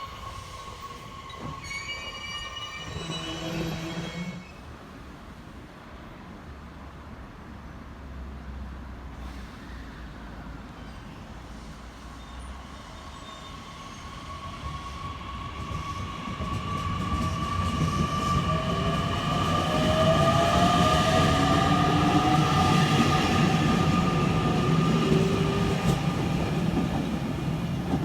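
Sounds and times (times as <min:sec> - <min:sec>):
train low rumble: 0:14.6 - 0:28.0.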